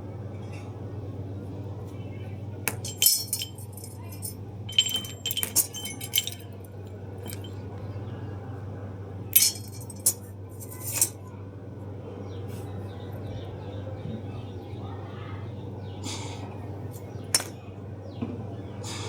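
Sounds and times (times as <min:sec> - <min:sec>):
steady low hum: 0:00.0 - 0:18.9
metal parts clinking: 0:02.7 - 0:07.5, 0:09.4 - 0:11.2, 0:17.0 - 0:17.6.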